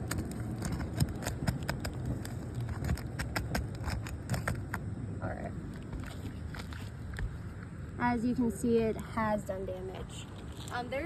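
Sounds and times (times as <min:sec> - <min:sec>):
shingle seal cracking clicks: 0:00.0 - 0:04.8.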